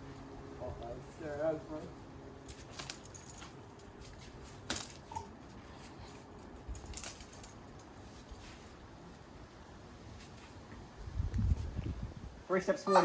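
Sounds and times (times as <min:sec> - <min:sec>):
faint metallic clicks and clinks: 0:02.4 - 0:09.2.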